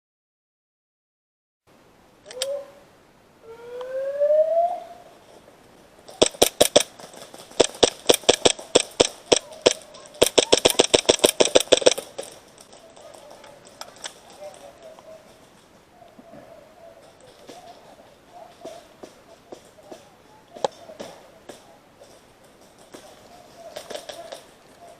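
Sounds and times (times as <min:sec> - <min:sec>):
rising tone: 0:03.4 - 0:05.1
airsoft pistols firing: 0:06.1 - 0:12.4.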